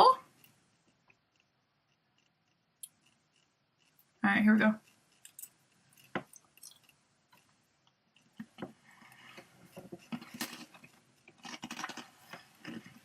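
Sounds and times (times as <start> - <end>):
pretzel crunching while chewed: 8.2 - 13.0.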